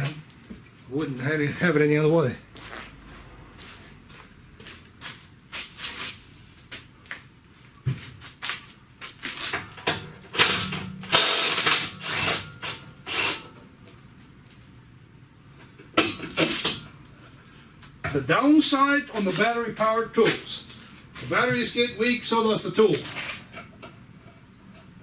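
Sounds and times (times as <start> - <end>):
impact wrench bursts: 10.3 - 13.6.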